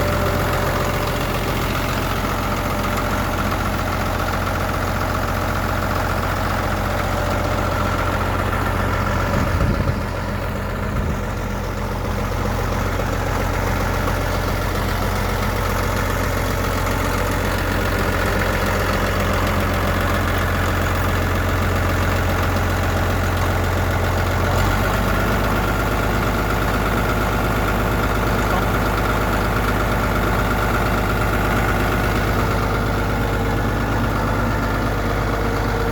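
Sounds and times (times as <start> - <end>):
diesel engine idling: 0.0 - 35.9.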